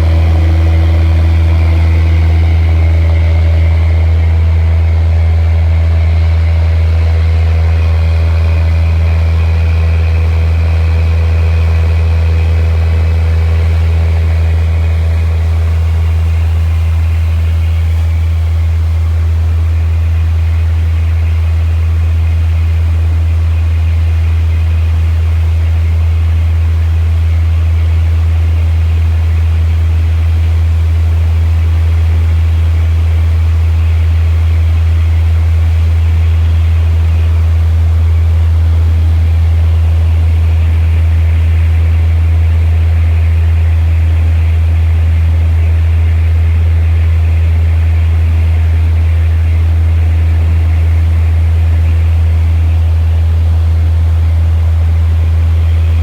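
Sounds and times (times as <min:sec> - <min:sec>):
boat engine humming: 0:00.0 - 0:56.0.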